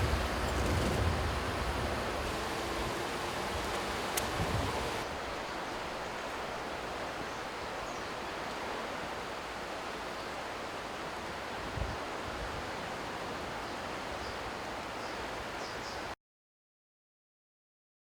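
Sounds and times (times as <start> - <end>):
outdoor rushing noise: 0.0 - 5.1.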